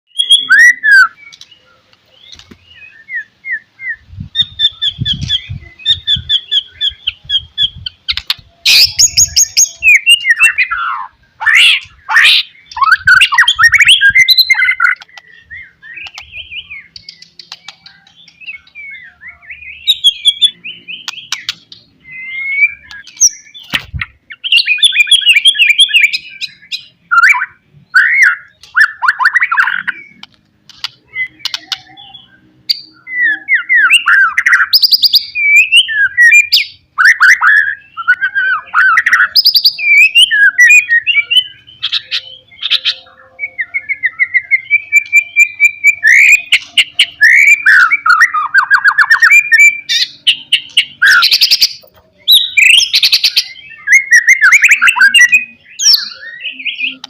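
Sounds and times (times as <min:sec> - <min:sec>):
bird singing whistled song: 0:00.1 - 0:23.7, 0:24.3 - 0:30.3, 0:30.9 - 0:57.0.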